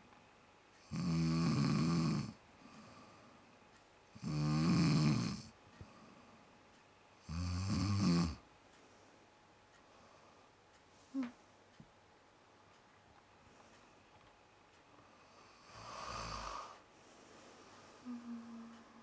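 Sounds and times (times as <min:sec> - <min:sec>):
snoring: 0:00.8 - 0:02.4, 0:04.2 - 0:05.5, 0:07.2 - 0:08.4, 0:15.3 - 0:16.8.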